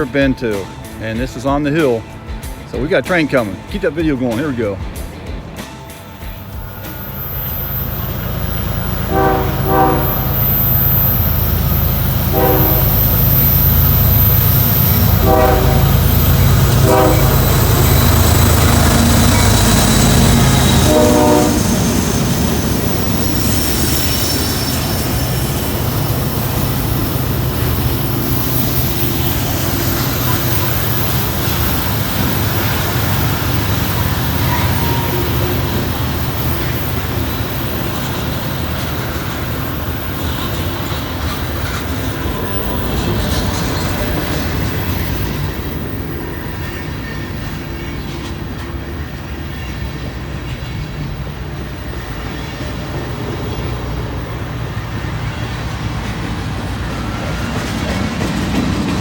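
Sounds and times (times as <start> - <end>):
diesel locomotive engines rumbling: 0.0 - 59.0
train horn blasts: 6.4 - 22.4, 29.8 - 38.2.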